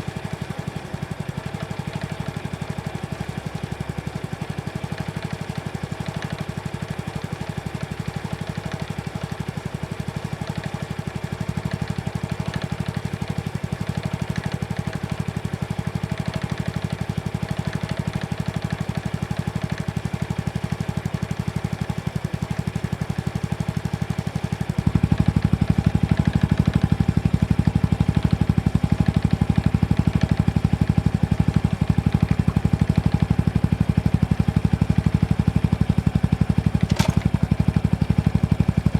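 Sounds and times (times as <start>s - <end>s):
motorcycle engine idling: 24.1s - 38.9s.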